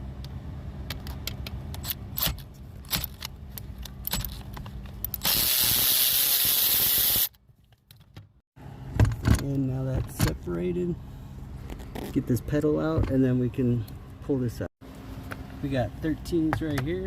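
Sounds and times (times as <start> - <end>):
pneumatic air ratchet running: 5.1 - 7.3.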